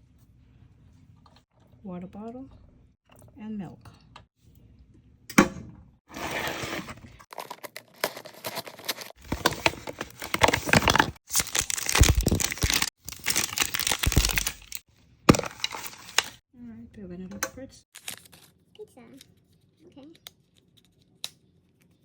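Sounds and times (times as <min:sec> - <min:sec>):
sharp plastic snap: 0:05.3 - 0:05.6
plastic wrapping crinkling and tearing: 0:06.4 - 0:16.4, 0:18.0 - 0:18.6.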